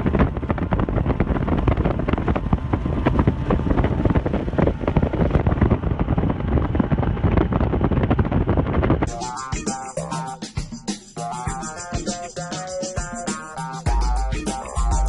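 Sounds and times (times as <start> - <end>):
wind buffeting microphone: 0.0 - 9.1
boat motor running: 0.0 - 10.0.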